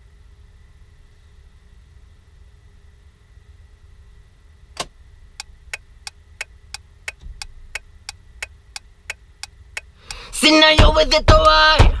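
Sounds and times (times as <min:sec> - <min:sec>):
faint low hum: 0:00.0 - 0:12.0
sharp click: 0:04.8 - 0:09.2.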